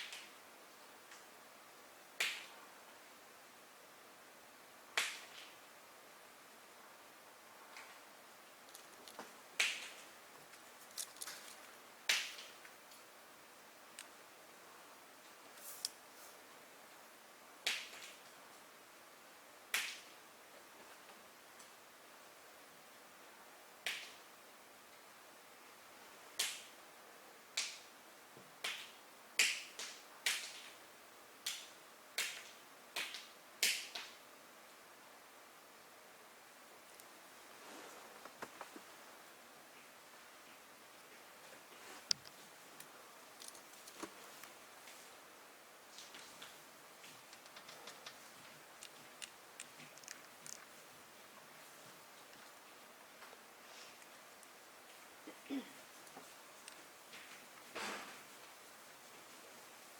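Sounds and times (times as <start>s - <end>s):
sharp snaps with echo: 2.2s - 2.6s, 5.0s - 5.5s, 9.6s - 10.1s, 12.1s - 12.7s, 19.7s - 20.1s, 26.4s - 26.7s, 28.6s - 30.8s, 31.4s - 34.2s
small clicks and taps: 46.0s - 50.8s.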